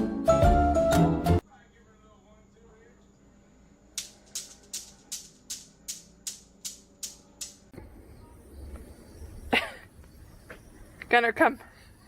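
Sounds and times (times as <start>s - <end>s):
rasping shaker-like strokes: 4.0s - 7.7s.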